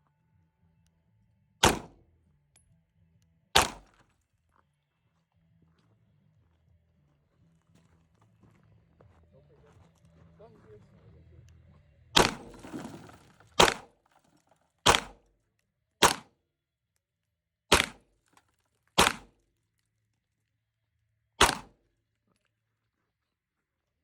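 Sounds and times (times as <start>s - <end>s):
single gunshots: 1.6s - 2.0s, 3.6s - 4.0s, 12.2s - 12.8s, 13.6s - 13.9s, 14.9s - 15.2s, 16.0s - 16.3s, 17.7s - 18.0s, 19.0s - 19.3s, 21.4s - 21.8s.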